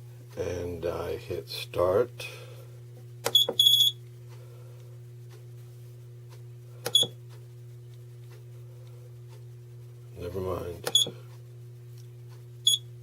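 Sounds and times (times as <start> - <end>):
machine humming low: 0.0 - 13.0
click and short high beep: 6.9 - 7.1, 12.6 - 12.9.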